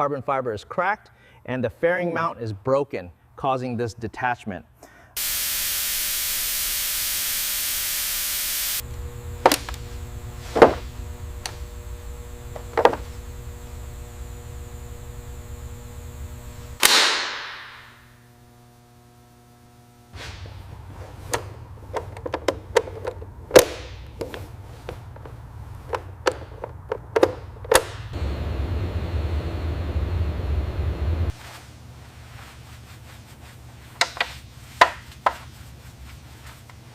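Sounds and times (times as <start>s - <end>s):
low steady hum: 5.2s - 16.8s, 17.6s - 33.9s
tools knocking and clicking: 21.3s - 24.4s, 25.1s - 27.9s.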